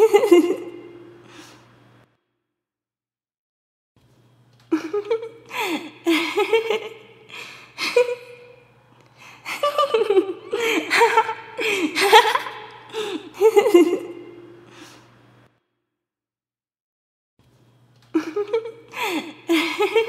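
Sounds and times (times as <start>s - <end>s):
person giggling: 0.0s - 1.2s, 4.7s - 8.6s, 9.2s - 14.8s, 18.1s - 20.0s.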